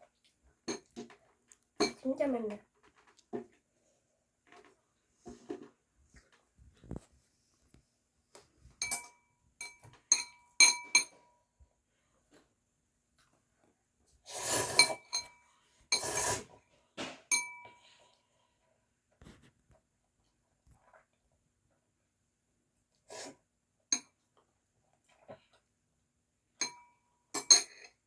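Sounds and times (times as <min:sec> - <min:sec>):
utensils clinking on dish: 0:08.8 - 0:11.2, 0:14.7 - 0:15.4, 0:17.3 - 0:17.8, 0:26.6 - 0:26.8, 0:27.4 - 0:28.0
utensils scraping dish: 0:14.3 - 0:16.6.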